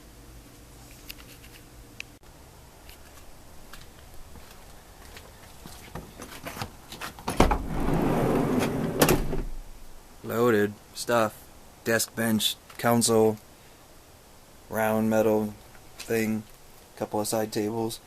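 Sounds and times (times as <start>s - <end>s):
sliding door rumbling: 7.4s - 9.7s.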